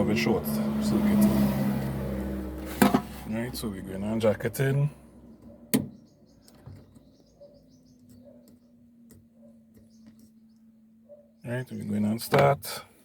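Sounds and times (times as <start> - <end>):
distant bird chirps: 5.0 - 11.5.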